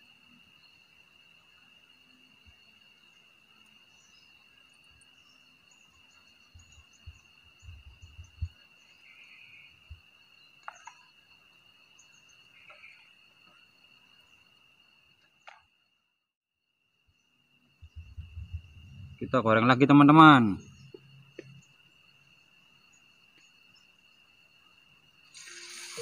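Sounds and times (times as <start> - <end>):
insects trilling: 0.0 - 16.1, 16.7 - 26.0.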